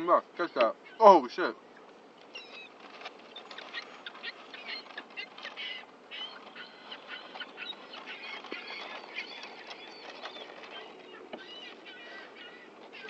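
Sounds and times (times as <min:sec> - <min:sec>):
seagulls squawking: 0:02.3 - 0:13.0.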